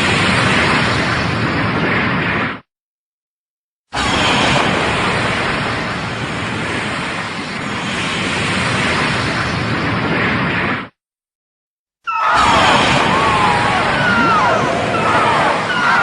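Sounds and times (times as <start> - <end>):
loud rushing rumble: 12.4 - 16.0.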